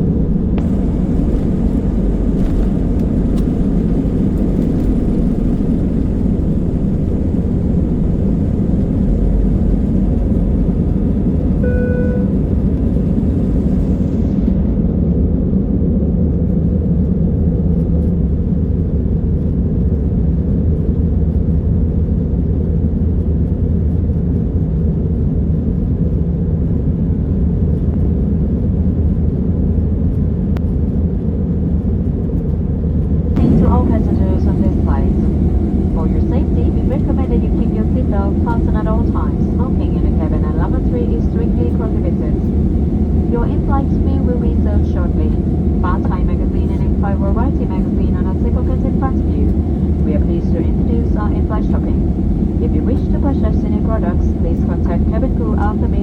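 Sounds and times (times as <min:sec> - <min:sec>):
aircraft cabin engine rumble: 0:00.0 - 0:56.0
electronic cabin chime: 0:00.6 - 0:14.9, 0:33.4 - 0:56.0.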